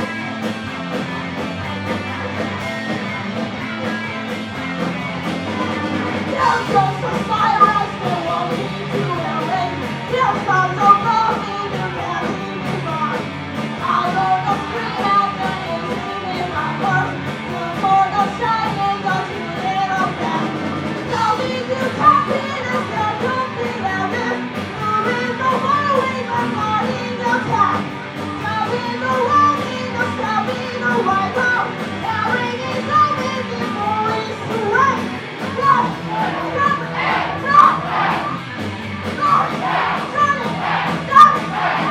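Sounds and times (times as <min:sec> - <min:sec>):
bass guitar: 0:00.0 - 0:41.9
drums: 0:00.0 - 0:41.9
electric guitar: 0:00.0 - 0:41.9
person singing: 0:06.2 - 0:38.4.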